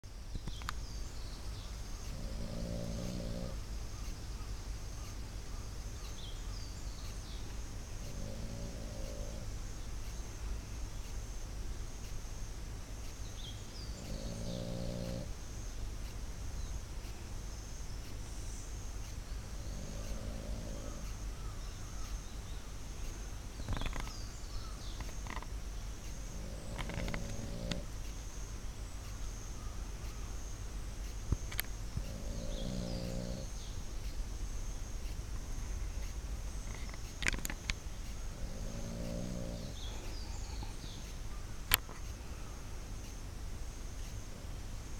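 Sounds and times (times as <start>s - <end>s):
pet snoring loudly: 2.0s - 3.6s, 8.0s - 9.5s, 13.9s - 15.4s, 19.4s - 21.2s, 26.1s - 27.9s, 32.0s - 33.7s, 38.3s - 41.1s.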